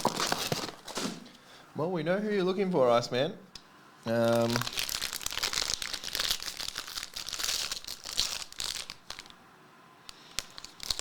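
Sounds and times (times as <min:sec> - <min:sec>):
card pack wrappers crinkling: 0:00.0 - 0:01.4, 0:04.1 - 0:09.4, 0:10.2 - 0:11.0.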